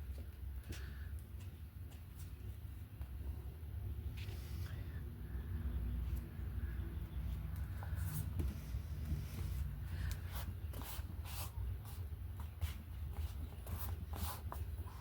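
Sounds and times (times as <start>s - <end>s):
steady low hum: 0.0s - 15.0s
scratchy rubbing on paper: 7.9s - 15.0s.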